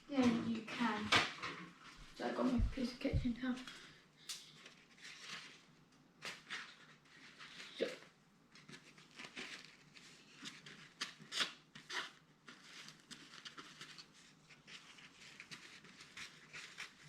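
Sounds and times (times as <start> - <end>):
kitchen towel rustling: 1.7 - 3.9.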